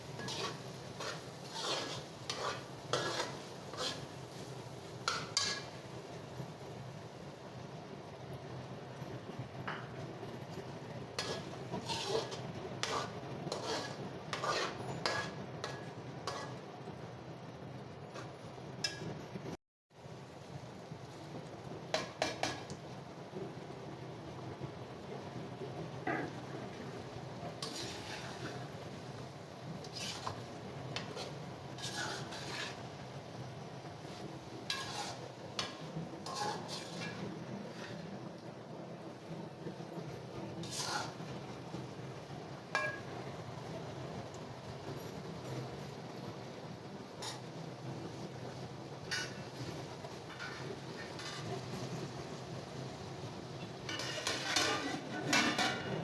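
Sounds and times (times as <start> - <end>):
spoon clinking and scraping pan: 0.1 - 4.1, 5.0 - 5.8, 11.2 - 16.6, 27.6 - 28.6, 29.8 - 32.8, 34.7 - 38.0, 42.8 - 43.1, 49.1 - 49.7, 50.3 - 51.9, 53.9 - 56.0.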